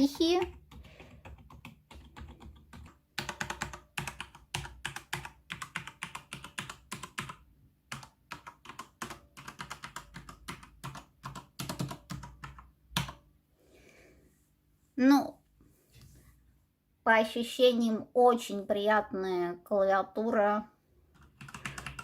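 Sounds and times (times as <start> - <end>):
typing on computer keyboard: 0.0 - 13.3, 21.1 - 22.0.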